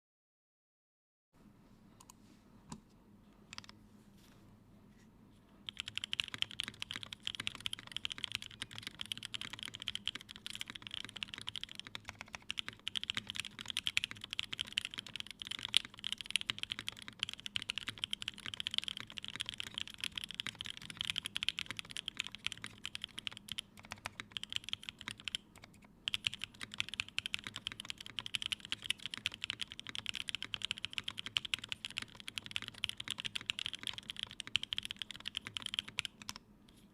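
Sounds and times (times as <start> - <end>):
mechanical keyboard typing: 5.7 - 36.4.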